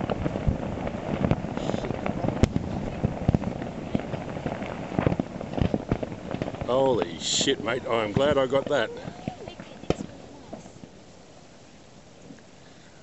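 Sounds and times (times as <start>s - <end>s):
sharp cracks: 0.0s - 10.2s
volcano crackling rumble: 0.0s - 13.0s.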